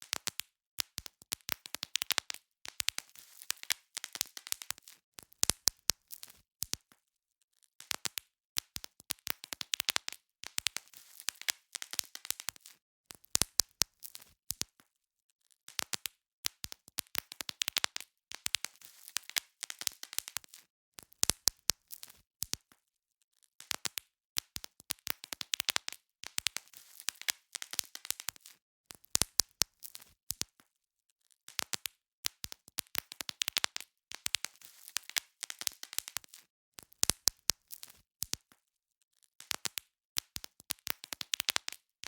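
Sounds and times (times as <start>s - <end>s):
bubble wrap popping: 0.0s - 7.0s, 7.8s - 14.8s, 15.7s - 22.8s, 23.6s - 30.6s, 31.5s - 38.6s, 39.4s - 41.9s
plastic sheet crinkling: 2.0s - 5.0s, 34.4s - 36.4s.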